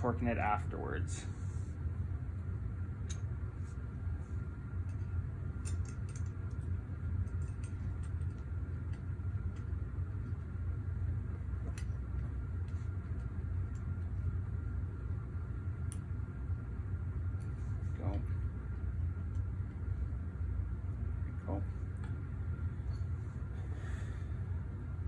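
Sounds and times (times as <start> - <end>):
steady low hum: 0.0 - 25.0
tools and metal parts clicking: 4.9 - 6.6, 7.2 - 8.4.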